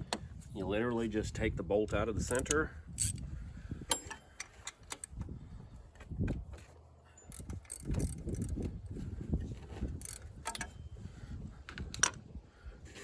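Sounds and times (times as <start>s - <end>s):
ratchet clicking: 7.3s - 8.7s, 10.0s - 10.7s.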